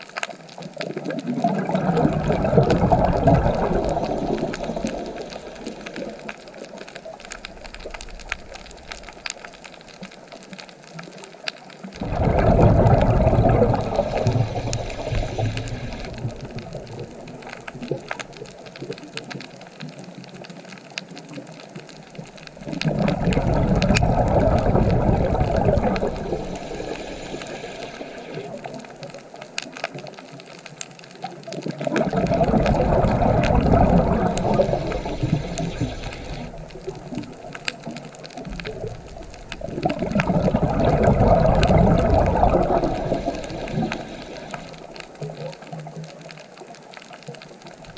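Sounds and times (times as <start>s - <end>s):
ocean waves breaking: 1.6s - 9.3s, 12.0s - 18.1s, 22.6s - 28.9s, 32.0s - 45.1s
small clicks: 2.9s - 12.0s, 13.4s - 40.3s.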